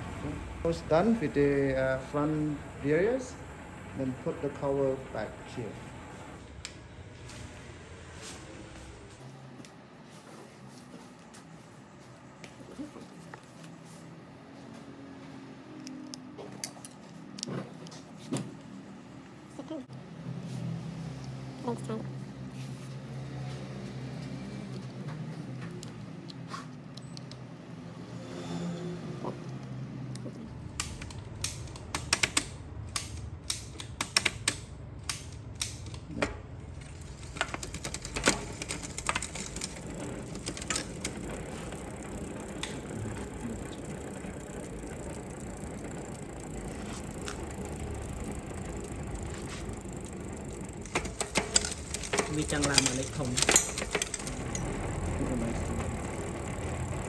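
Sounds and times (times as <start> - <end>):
low steady mechanical noise: 0.0 - 7.9, 30.5 - 57.0
sharp irregular clicks and knocks: 29.6 - 57.0.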